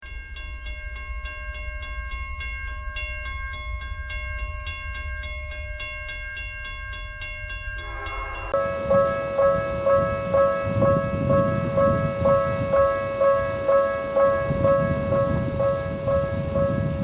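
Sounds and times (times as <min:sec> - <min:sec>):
level crossing warning bell: 0:00.0 - 0:17.0
loud noisy pulsing sound: 0:08.6 - 0:17.0.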